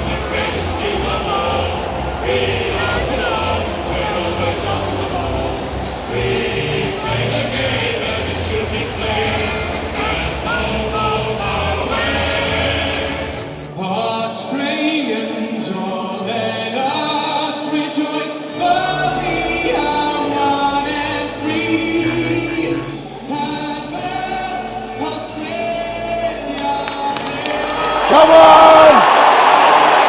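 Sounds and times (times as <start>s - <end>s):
choir-like singing with accompaniment: 0.0s - 30.0s.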